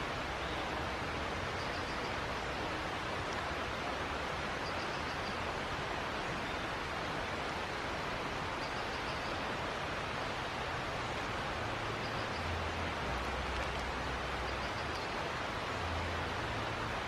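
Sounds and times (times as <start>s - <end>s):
outdoor background hiss: 0.0s - 17.0s
faint high-pitched ticks: 14.5s - 15.2s.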